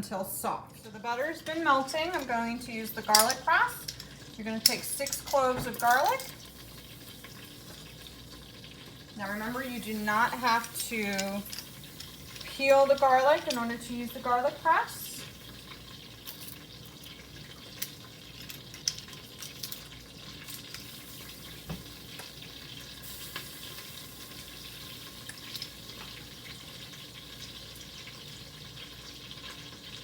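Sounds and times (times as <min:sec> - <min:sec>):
butter sizzling: 0:01.0 - 0:30.0.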